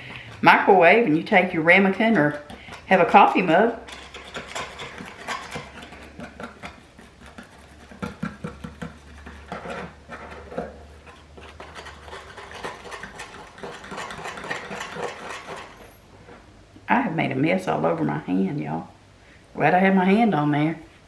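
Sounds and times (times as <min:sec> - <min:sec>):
utensil whisking in ramekin: 0:00.0 - 0:15.9
low steady hum: 0:00.0 - 0:21.0.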